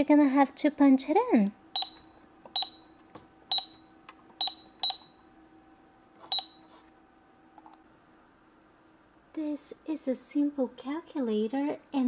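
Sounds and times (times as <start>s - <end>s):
toy cash register beeps: 1.8s - 2.9s, 3.5s - 3.8s, 4.4s - 5.2s, 6.3s - 6.7s.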